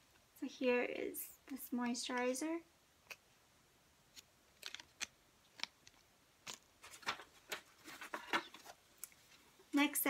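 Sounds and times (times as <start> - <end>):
packaging clicks and taps: 4.2 - 8.7
packaging crinkling: 4.5 - 8.8.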